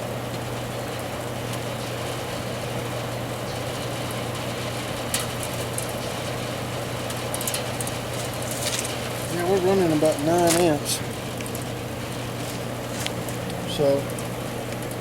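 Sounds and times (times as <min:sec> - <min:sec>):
air conditioner humming: 0:00.0 - 0:15.0
light crackles: 0:03.5 - 0:15.0.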